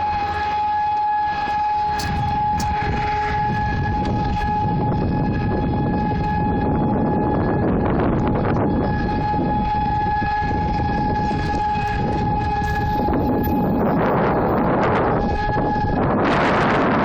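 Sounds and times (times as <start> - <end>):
low background rumble: 0.0 - 17.0
siren steady tone: 0.0 - 17.0.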